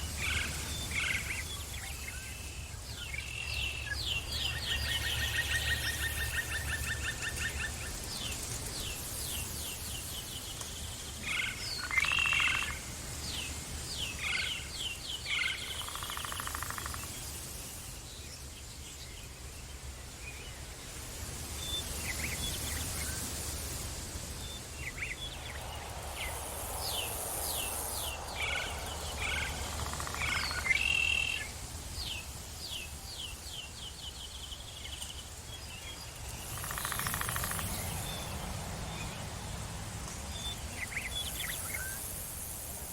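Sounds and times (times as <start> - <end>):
forest birds singing: 0.0 - 42.9
steady low rumble: 23.6 - 32.3.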